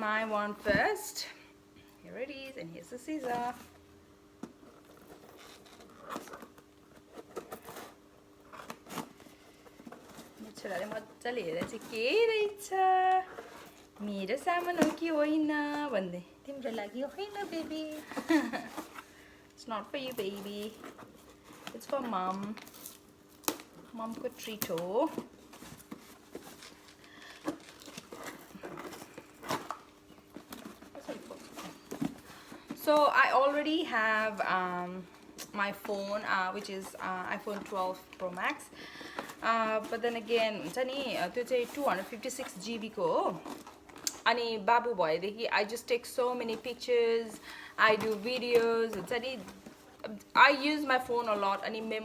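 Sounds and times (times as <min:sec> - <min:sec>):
packaging crinkling and rustling: 0:04.5 - 0:16.0, 0:16.6 - 0:45.0
scissors cutting packaging: 0:20.0 - 0:34.5.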